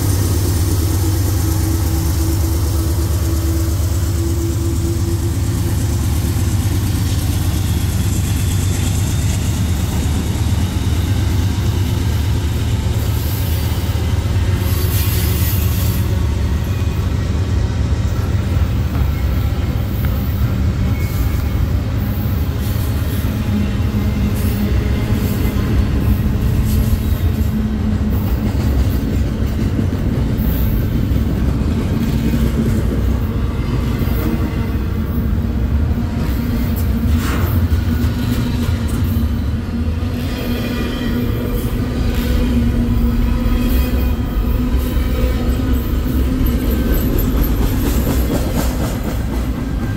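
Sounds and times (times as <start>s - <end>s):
freight train rumbling on rails: 0.0s - 49.9s
train wheel squeals: 0.0s - 49.9s.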